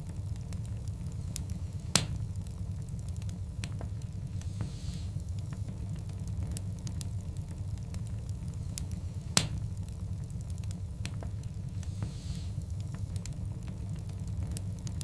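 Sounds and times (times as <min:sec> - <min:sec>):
fire crackles: 0:00.0 - 0:15.0
low rumble of fire flames: 0:00.0 - 0:15.0
soft hiss: 0:00.0 - 0:15.0
sharp pop from fire: 0:01.8 - 0:02.3, 0:08.8 - 0:09.8.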